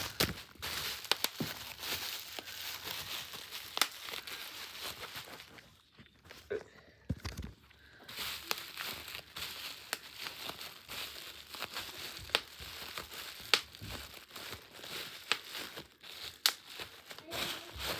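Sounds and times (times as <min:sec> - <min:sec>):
bubble wrap crinkling: 0:00.0 - 0:06.5, 0:07.3 - 0:17.9.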